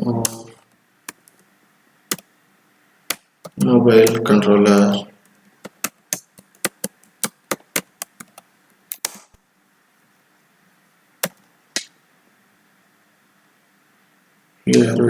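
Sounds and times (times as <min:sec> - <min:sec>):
computer keyboard typing: 0:03.4 - 0:04.3, 0:05.2 - 0:09.2, 0:11.2 - 0:11.4.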